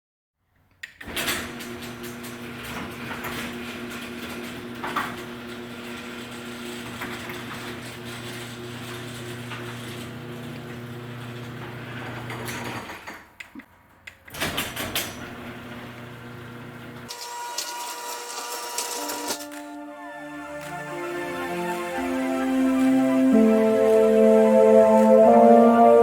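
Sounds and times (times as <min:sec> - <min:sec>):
garage door opener motor humming: 0:01.0 - 0:13.1, 0:14.7 - 0:19.4.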